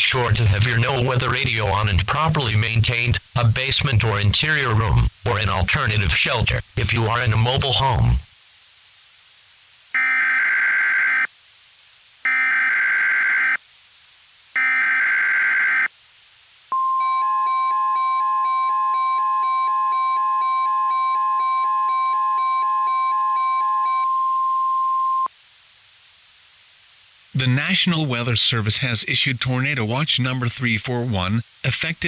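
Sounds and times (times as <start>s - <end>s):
steady warning alarm tone: 10.0s - 11.3s, 12.3s - 13.6s, 14.6s - 15.9s, 16.8s - 25.3s.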